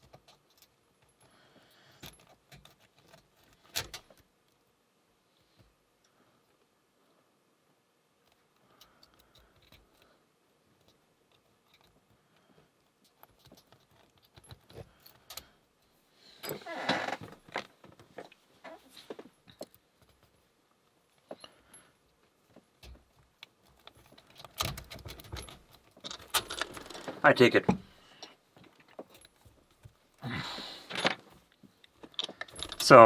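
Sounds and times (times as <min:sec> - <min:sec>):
lock picks clicking and scraping: 0:00.0 - 0:01.3, 0:01.9 - 0:04.3, 0:08.2 - 0:10.1, 0:10.7 - 0:17.6, 0:21.1 - 0:27.6, 0:28.2 - 0:30.2, 0:30.8 - 0:33.0
metal jangling rattle: 0:23.8 - 0:27.1, 0:32.1 - 0:33.0.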